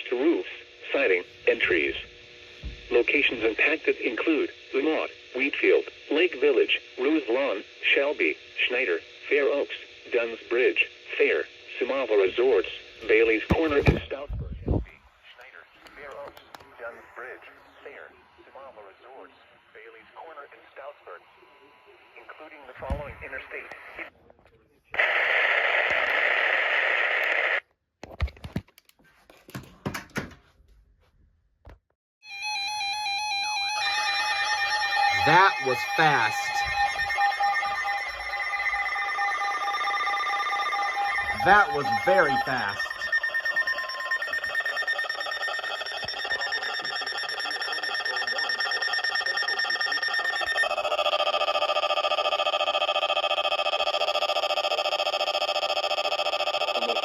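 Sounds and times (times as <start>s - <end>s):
radio static hiss: 0.0s - 24.1s, 24.9s - 27.6s, 35.1s - 38.9s, 39.9s - 49.7s
pulsing electronic alert tone: 33.8s - 50.8s.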